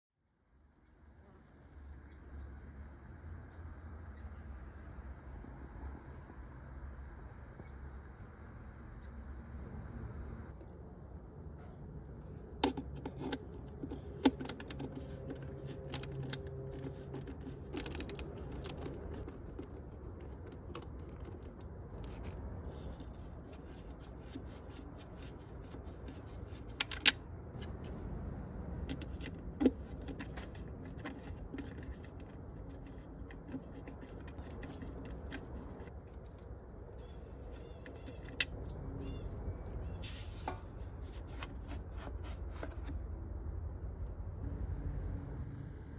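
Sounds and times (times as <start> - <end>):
small metal objects clinking: 14.4 - 19.8
low hum: 42.9 - 45.9.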